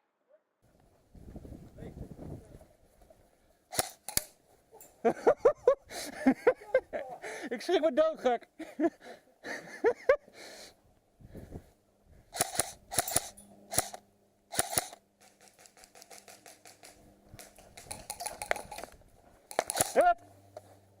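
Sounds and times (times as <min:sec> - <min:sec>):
airsoft guns firing: 0:03.7 - 0:04.4, 0:12.4 - 0:18.9, 0:19.5 - 0:20.2.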